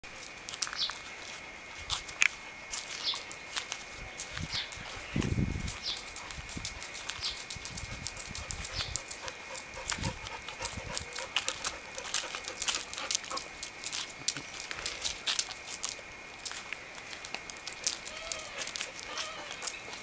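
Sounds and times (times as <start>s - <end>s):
cats giving short high calls: 18.0s - 19.8s.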